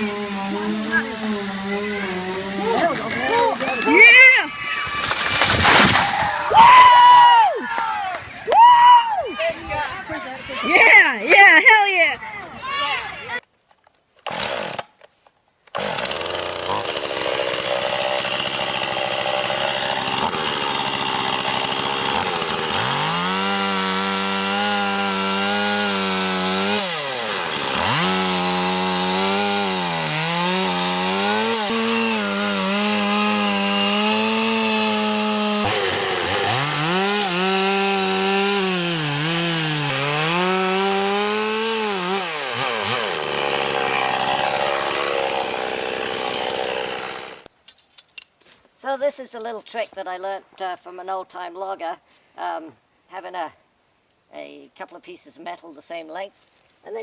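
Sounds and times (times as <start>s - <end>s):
chainsaw cutting wood: 0.0s - 8.3s, 14.2s - 47.5s.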